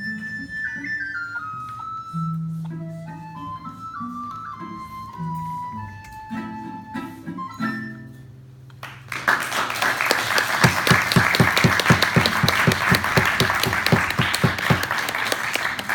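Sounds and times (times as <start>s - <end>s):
recorder playing: 0.0s - 8.5s
audience applauding: 8.8s - 15.9s.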